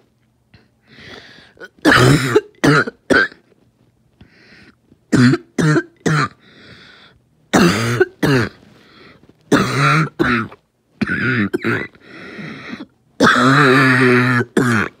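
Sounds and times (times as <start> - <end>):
person coughing: 1.6 - 3.5, 5.1 - 6.4, 7.5 - 8.6, 9.5 - 15.0.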